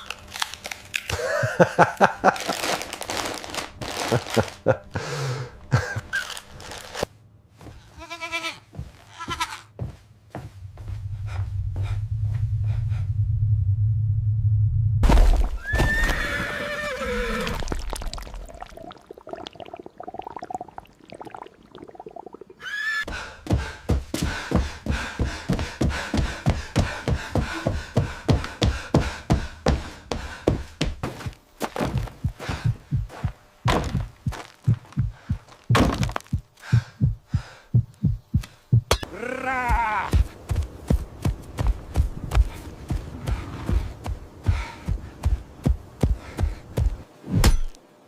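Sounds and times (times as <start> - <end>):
dull low thumps: 10.4 - 15.6, 31.8 - 39.0, 40.1 - 47.1
wavering pitched cry: 22.6 - 23.0.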